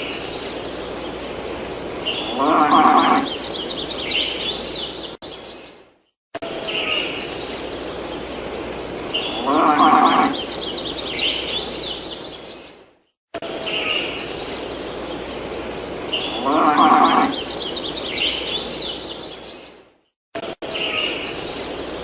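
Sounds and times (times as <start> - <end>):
birds chirping: 0.0 - 5.8, 6.4 - 12.8, 13.4 - 19.8
low drawn-out animal call: 2.2 - 3.4, 9.3 - 10.5, 16.2 - 17.5.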